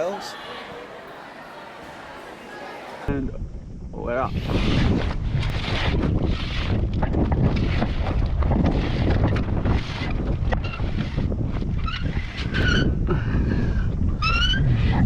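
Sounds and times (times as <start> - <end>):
wind buffeting microphone: 3.1 - 15.0.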